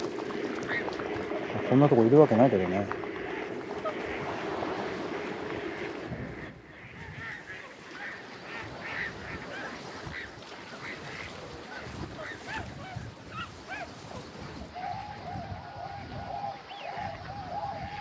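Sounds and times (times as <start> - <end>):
low wind rumble: 0.0 - 9.5
waterfowl flock honking: 0.0 - 14.0.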